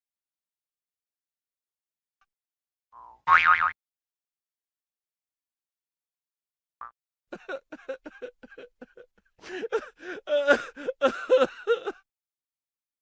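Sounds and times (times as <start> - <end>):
laughter bursts: 7.4 - 12.0.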